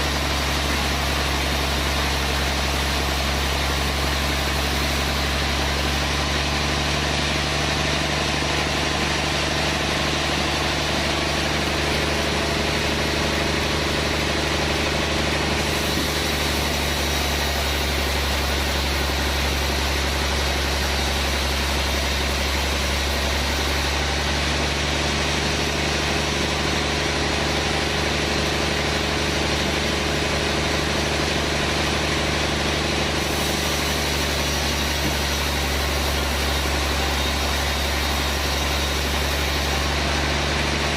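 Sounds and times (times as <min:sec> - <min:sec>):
sawmill machinery humming: 0:00.0 - 0:40.9.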